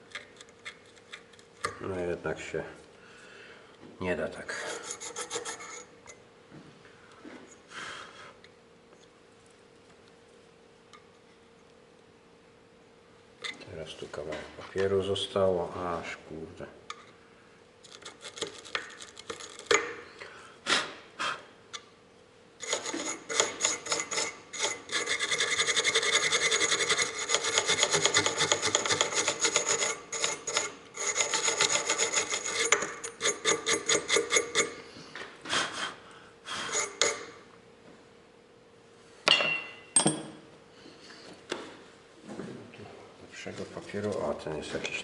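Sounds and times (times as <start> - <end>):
sandpaper rubbing on metal contacts: 22.6 - 34.7.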